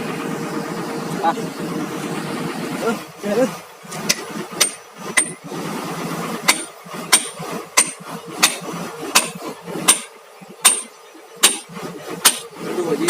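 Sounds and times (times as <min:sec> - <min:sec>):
hammer striking steel: 0:04.1 - 0:05.4, 0:06.4 - 0:12.5.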